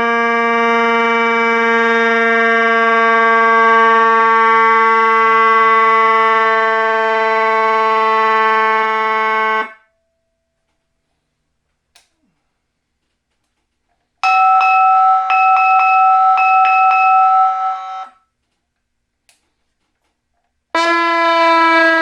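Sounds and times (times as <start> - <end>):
electronic siren steady tone: 0.0 - 9.7, 15.0 - 18.2.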